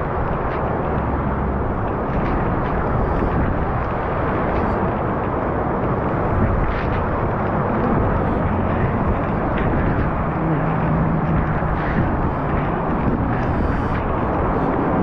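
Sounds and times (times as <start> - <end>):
floodwater rushing in river: 0.0 - 15.0.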